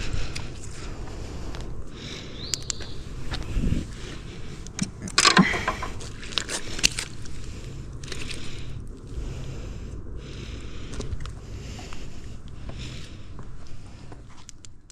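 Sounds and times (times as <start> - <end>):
low background rumble: 0.0 - 14.9
scraping and clicking handling noises: 4.6 - 7.1.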